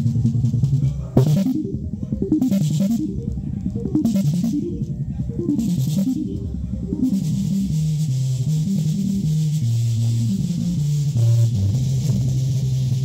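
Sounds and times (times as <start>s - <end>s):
music from car sound system: 0.1s - 13.0s
drum beat: 1.2s - 8.0s
bass line: 1.2s - 13.0s.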